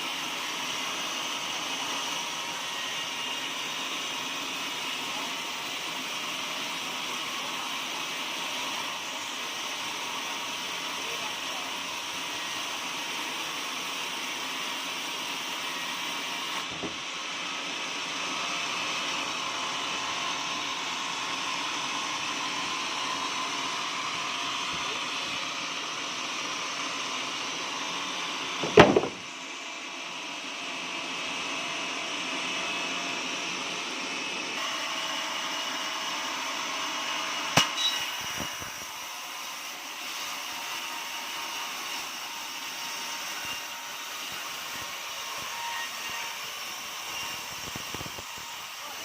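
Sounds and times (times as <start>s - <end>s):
sawmill saw cutting log: 0.0s - 49.0s
sharp loud knock: 28.6s - 29.2s.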